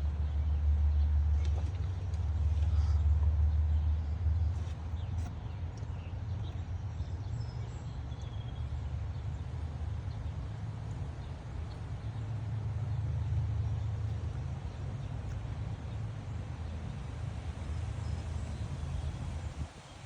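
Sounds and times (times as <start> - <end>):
gusty wind buffeting microphone: 13.7 - 20.0.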